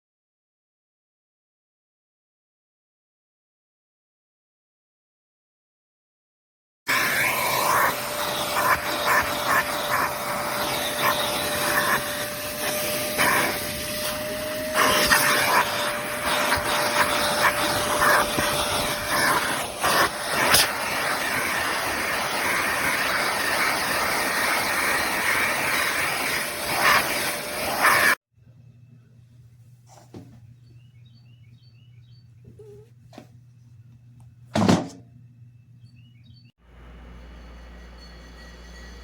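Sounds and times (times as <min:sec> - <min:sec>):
shop vacuum running: 0:06.9 - 0:28.2, 0:36.2 - 0:39.0.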